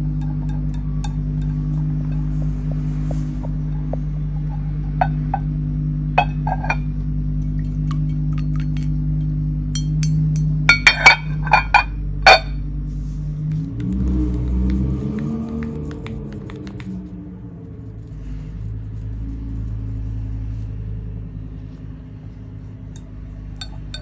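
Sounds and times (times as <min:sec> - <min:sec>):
brush clinking on ceramic palette: 0:00.2 - 0:04.0, 0:22.6 - 0:24.0.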